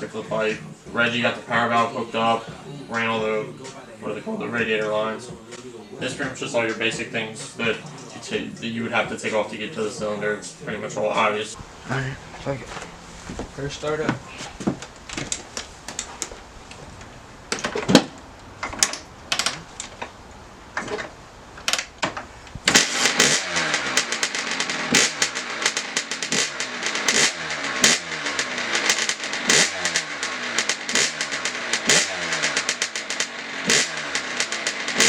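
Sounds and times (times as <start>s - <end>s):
two-stroke engine revving: 22.6s - 35.0s.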